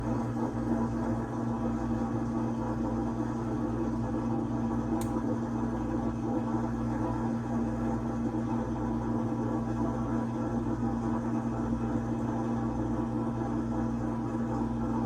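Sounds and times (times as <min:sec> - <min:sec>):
dishwasher motor hum: 0:00.0 - 0:15.0.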